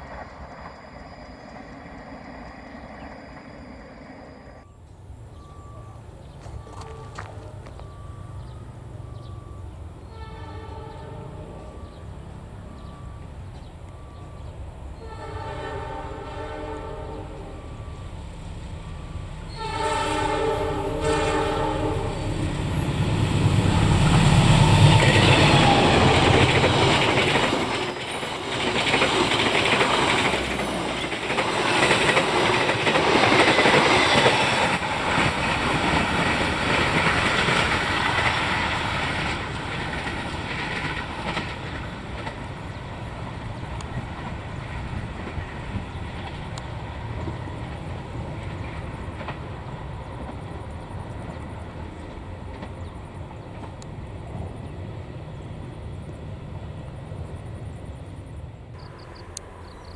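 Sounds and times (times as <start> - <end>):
loud train engine rumble: 0.0 - 59.9
train horn blasts: 6.5 - 8.4, 10.0 - 13.0, 15.0 - 18.1, 19.4 - 22.8, 58.8 - 59.9
wheels clattering over rails: 22.5 - 54.7.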